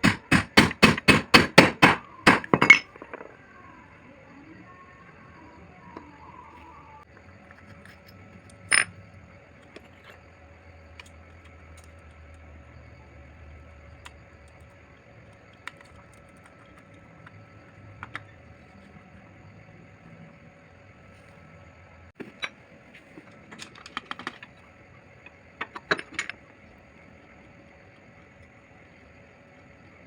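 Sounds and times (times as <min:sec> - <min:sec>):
metal tools clinking: 0:02.5 - 0:03.4.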